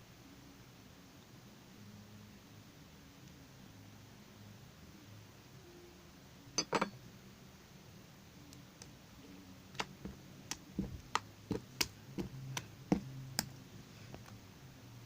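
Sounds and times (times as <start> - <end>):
slime clicking and tapping: 9.7 - 13.6.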